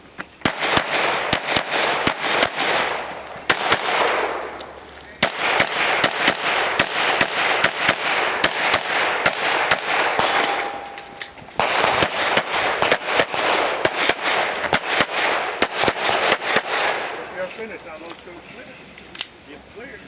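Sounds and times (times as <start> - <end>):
rapid pistol shots: 0.4 - 4.6, 5.2 - 10.9, 11.6 - 17.4.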